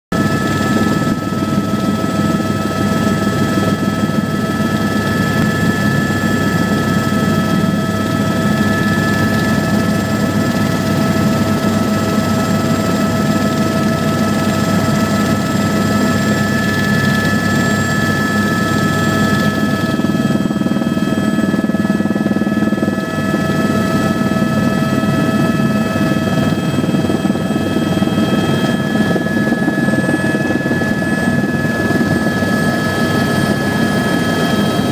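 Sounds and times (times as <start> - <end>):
helicopter rotor noise: 0.1 - 34.9
high whining tones: 0.2 - 11.3.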